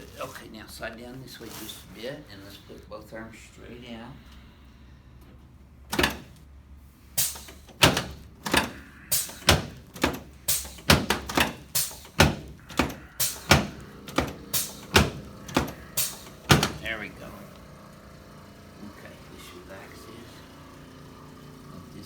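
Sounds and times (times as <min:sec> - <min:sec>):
sharp knocks: 0:07.2 - 0:17.0.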